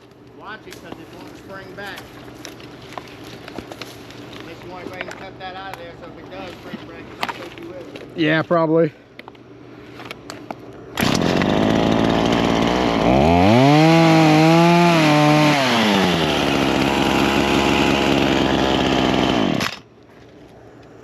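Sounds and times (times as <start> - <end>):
chainsaw running: 11.0 - 19.9.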